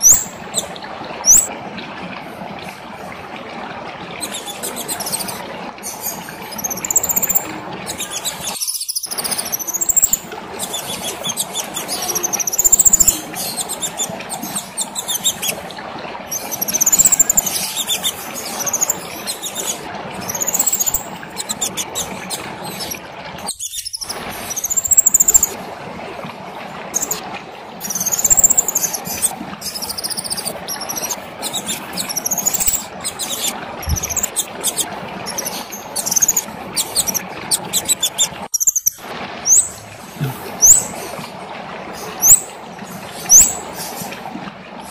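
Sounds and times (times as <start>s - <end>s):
songbird singing whistled phrases: 0.0s - 0.3s, 1.3s - 1.5s, 6.5s - 15.5s, 16.4s - 21.8s, 22.7s - 25.6s, 27.9s - 29.0s, 29.7s - 39.7s, 43.3s - 43.6s.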